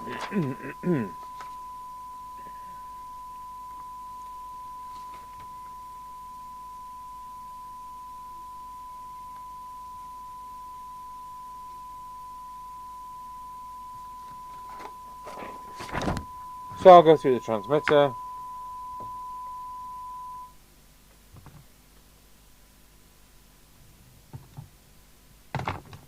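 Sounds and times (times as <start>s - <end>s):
steady test tone: 0.0s - 20.6s
faint low hum: 0.0s - 26.0s.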